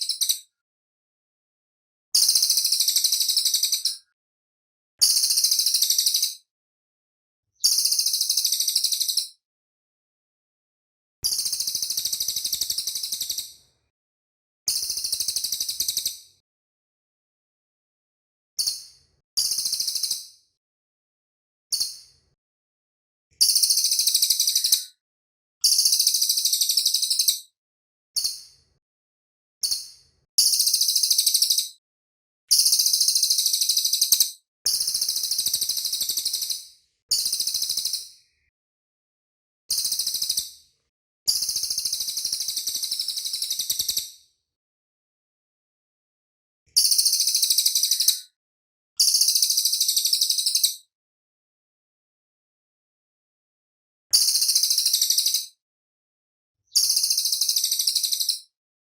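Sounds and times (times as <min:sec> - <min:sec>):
songbird high-pitched trills: 0:00.0 - 0:00.5, 0:05.0 - 0:06.4, 0:07.6 - 0:09.4, 0:23.4 - 0:25.0, 0:25.6 - 0:27.4, 0:32.5 - 0:34.2, 0:46.8 - 0:48.3
songbird singing high trills: 0:23.6 - 0:24.8.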